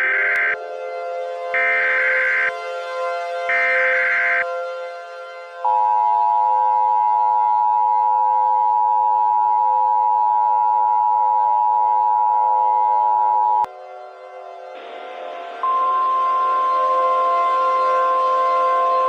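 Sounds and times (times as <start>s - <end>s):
steady low drone: 0.0s - 7.2s, 13.7s - 19.0s.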